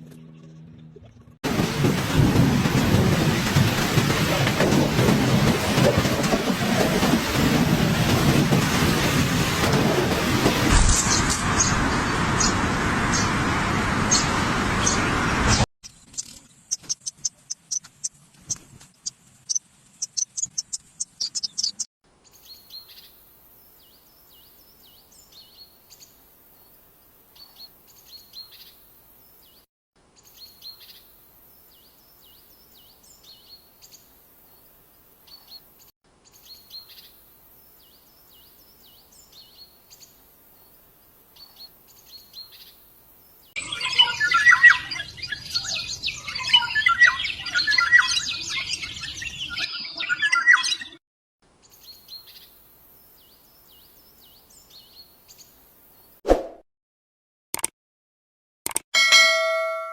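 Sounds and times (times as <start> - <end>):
small birds chirping: 15.8 - 29.6, 30.2 - 51.0, 51.6 - 56.2
dense chorus of birds chirping: 30.2 - 51.0, 51.6 - 56.2.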